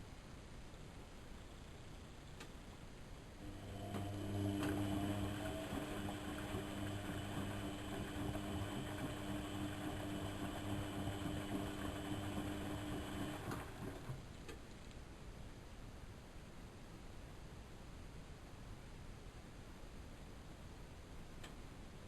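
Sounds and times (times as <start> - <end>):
washing machine motor hum: 3.4 - 14.3.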